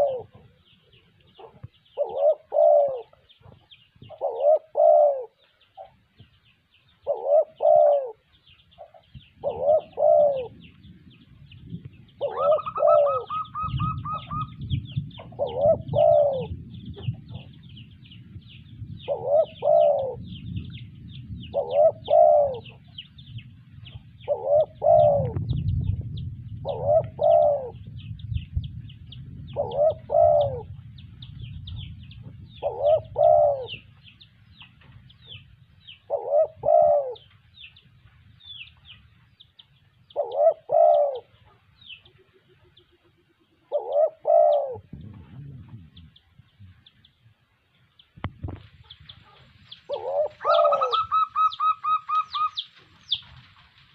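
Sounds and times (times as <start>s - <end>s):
dove cooing: 0.0s - 6.3s, 6.9s - 10.8s, 12.1s - 17.8s, 18.9s - 20.6s, 21.4s - 23.0s, 23.8s - 25.8s, 26.5s - 28.2s, 29.4s - 30.8s, 31.7s - 33.9s, 35.2s - 37.4s, 40.1s - 46.9s, 48.5s - 53.2s
low rumble: 13.4s - 36.1s, 44.7s - 49.9s.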